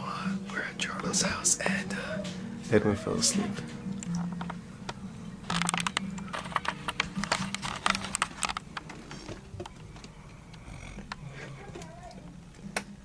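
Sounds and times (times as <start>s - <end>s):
rattling snores: 9.0s - 12.1s.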